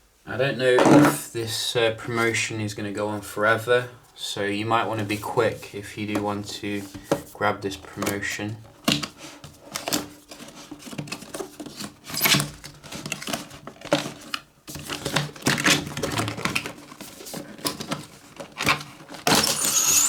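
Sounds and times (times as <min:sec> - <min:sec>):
paper and plastic crinkling: 0:07.9 - 0:19.4.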